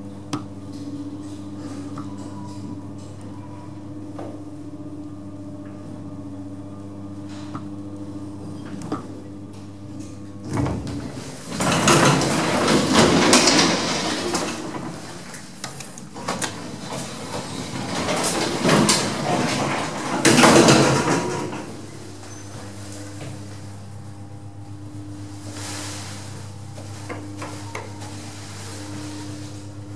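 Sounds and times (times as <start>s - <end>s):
lift humming: 9.5s - 29.9s
lift doors sliding and clattering: 10.0s - 23.7s.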